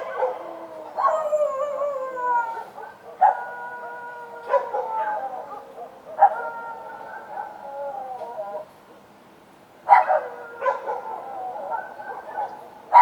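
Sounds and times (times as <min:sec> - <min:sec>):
dogs howling: 0:00.0 - 0:08.7, 0:09.9 - 0:13.0.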